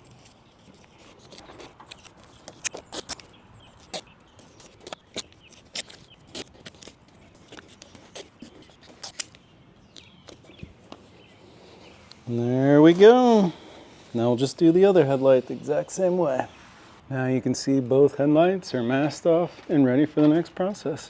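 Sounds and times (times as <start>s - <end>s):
masking tape clicking and crackling: 0.0s - 13.3s.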